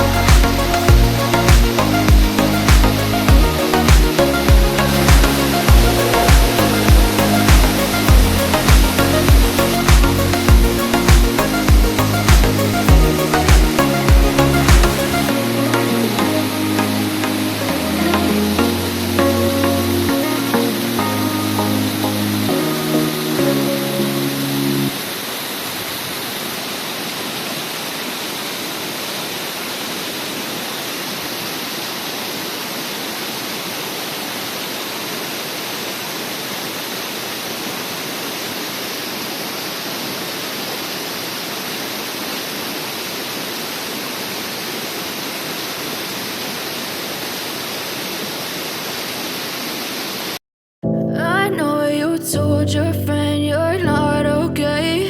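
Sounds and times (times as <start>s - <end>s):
waterfall rushing: 0.0s - 50.4s.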